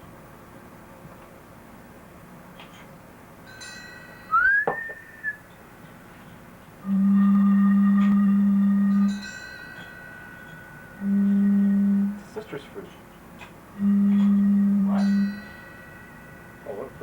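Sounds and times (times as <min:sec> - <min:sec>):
fainter higher tone: 0:03.6 - 0:05.4, 0:06.8 - 0:12.4, 0:13.7 - 0:17.0
whistle tone gliding up: 0:04.3 - 0:05.4
loud steady low tone: 0:06.8 - 0:09.3, 0:10.9 - 0:12.6, 0:13.7 - 0:17.0.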